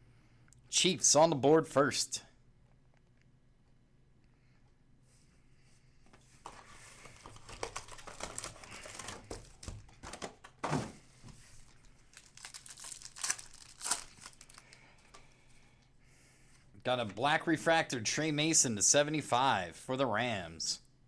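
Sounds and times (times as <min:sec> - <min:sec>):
card wrapper crinkling and tearing: 0:06.5 - 0:10.8, 0:11.5 - 0:15.2.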